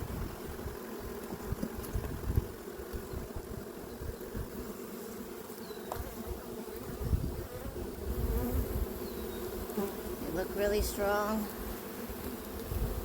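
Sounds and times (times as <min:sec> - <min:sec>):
bees buzzing: 0:00.0 - 0:13.0.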